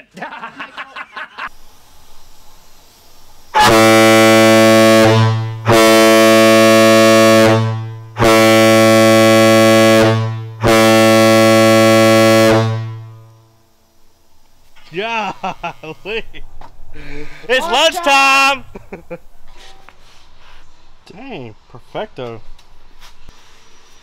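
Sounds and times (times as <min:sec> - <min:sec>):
ship air horn blasts: 0:03.5 - 0:13.6.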